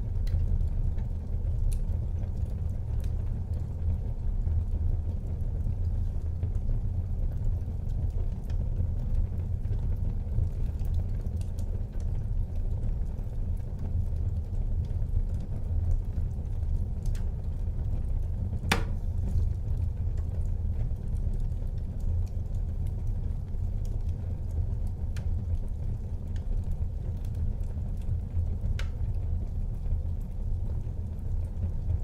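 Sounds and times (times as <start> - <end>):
fire crackles: 0.0 - 32.0
wood fire rumbling: 0.0 - 32.0
sharp fire pop: 18.6 - 19.0.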